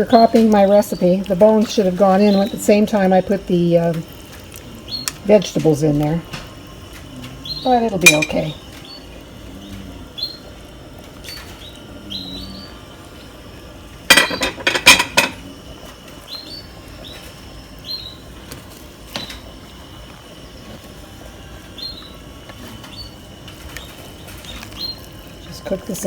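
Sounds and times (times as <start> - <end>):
metal utensil knocking on pot: 8.0 - 8.4, 14.1 - 15.4.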